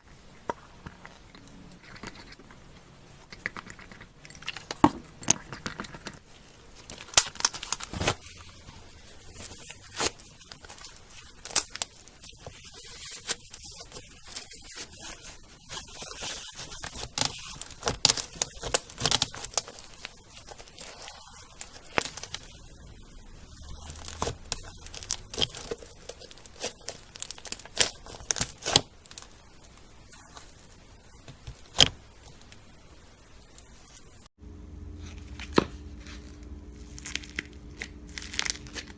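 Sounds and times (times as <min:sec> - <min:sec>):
slime crackling and popping: 0:03.4 - 0:32.6, 0:35.2 - 0:38.9.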